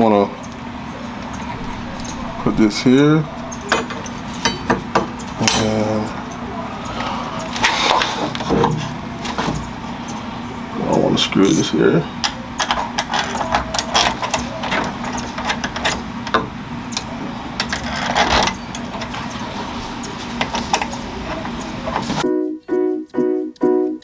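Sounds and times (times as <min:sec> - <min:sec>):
steady hum: 0:00.0 - 0:22.2
screws clicking and rattling: 0:10.9 - 0:22.2.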